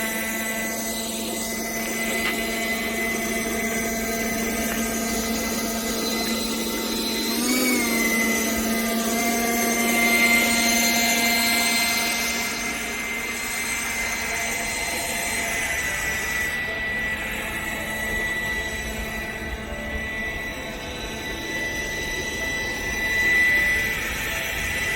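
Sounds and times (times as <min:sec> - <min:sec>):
electric ducted fan whining: 0:00.0 - 0:24.9.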